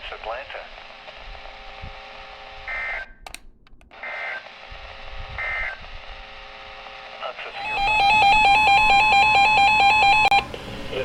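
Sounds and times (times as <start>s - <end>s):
clicks: 3.2s - 4.0s.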